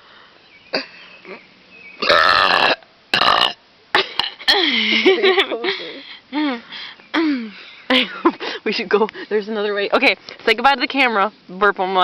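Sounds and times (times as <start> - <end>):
loud burps: 2.0 - 3.6.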